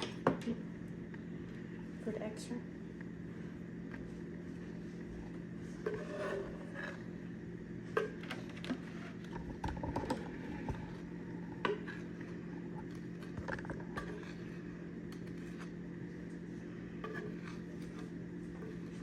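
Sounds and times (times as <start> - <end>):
low hum: 0.3 - 19.0
utensils scraping a mixing bowl: 5.6 - 7.3, 8.0 - 15.8, 17.0 - 19.0.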